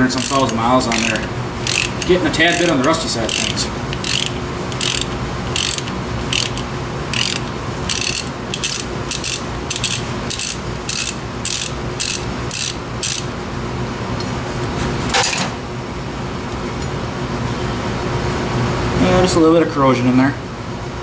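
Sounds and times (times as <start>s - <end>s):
socket ratchet clicking: 0.0s - 13.3s
steady low hum: 0.0s - 21.0s.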